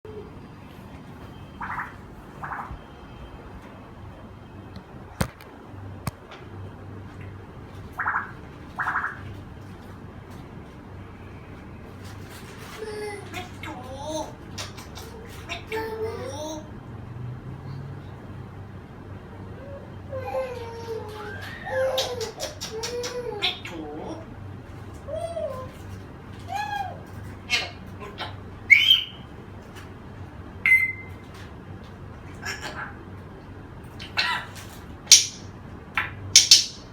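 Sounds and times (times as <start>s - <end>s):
parrot calls: 1.5s - 2.9s, 7.9s - 9.3s, 19.5s - 24.3s, 25.0s - 29.3s, 30.6s - 31.3s, 32.2s - 33.1s, 33.9s - 36.9s
parrot sharp whistles: 30.6s - 31.2s.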